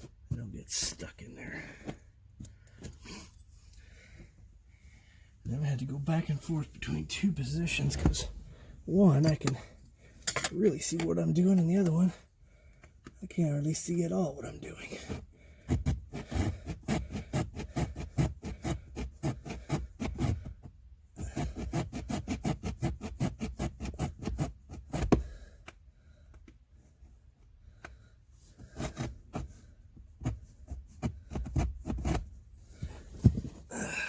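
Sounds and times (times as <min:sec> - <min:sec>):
hand saw cutting plastic: 0:15.7 - 0:20.6, 0:21.2 - 0:25.4.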